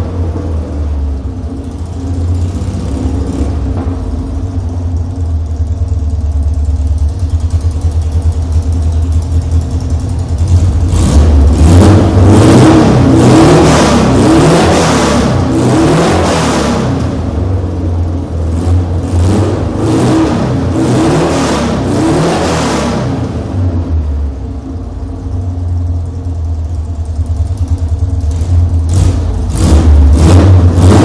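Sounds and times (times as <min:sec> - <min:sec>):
car engine idling and revving: 0:00.0 - 0:31.0.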